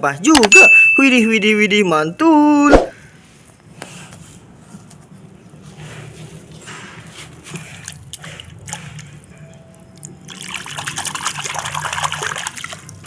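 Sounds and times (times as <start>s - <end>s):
water trickling and splashing: 6.9s - 13.0s.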